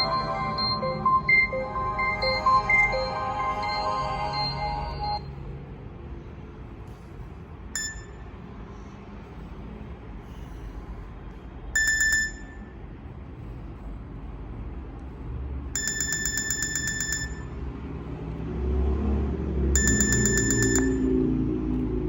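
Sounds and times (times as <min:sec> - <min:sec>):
rapidly pulsing electronic beep tone: 0:00.0 - 0:05.3, 0:19.8 - 0:21.1.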